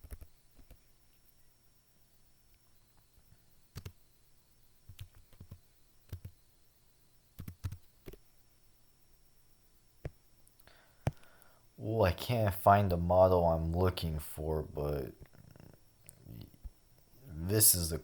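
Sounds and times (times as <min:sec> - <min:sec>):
computer mouse and key clicks: 0:00.0 - 0:00.8, 0:03.7 - 0:04.0, 0:04.9 - 0:06.4, 0:07.4 - 0:08.2.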